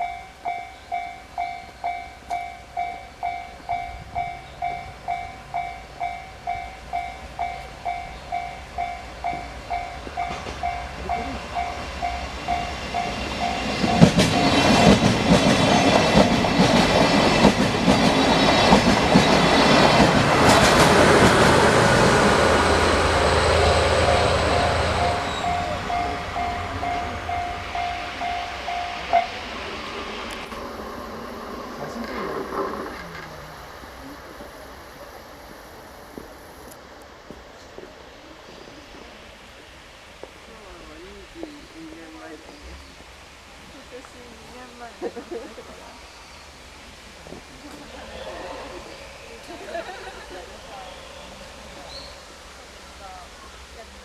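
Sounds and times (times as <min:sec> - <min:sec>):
level crossing warning bell: 0:00.0 - 0:30.9
train wheels clacking over rail joints: 0:00.0 - 0:33.4.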